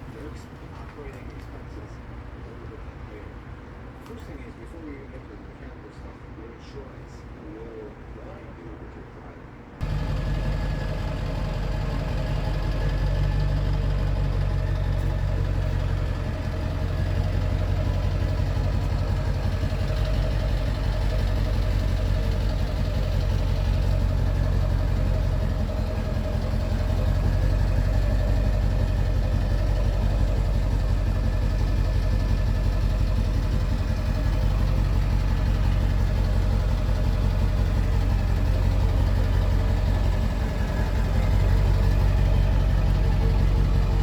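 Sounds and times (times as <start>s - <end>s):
vehicle engine droning: 9.8s - 44.0s.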